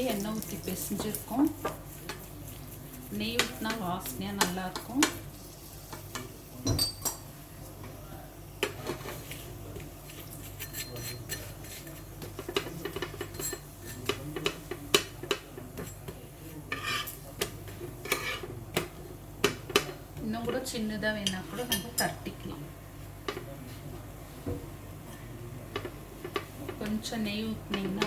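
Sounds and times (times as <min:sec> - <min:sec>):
metal spatula scraping on griddle: 0:10.1 - 0:12.0, 0:16.7 - 0:17.2, 0:18.0 - 0:18.5.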